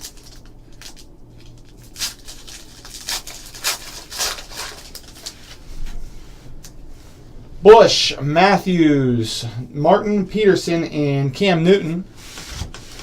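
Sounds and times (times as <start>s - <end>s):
cards rustling and crinkling: 0.0s - 5.6s.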